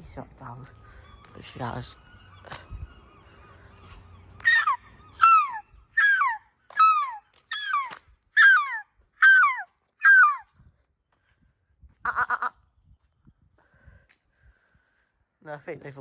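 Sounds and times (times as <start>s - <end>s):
gull yelping calls: 0.0s - 10.6s, 12.0s - 12.8s.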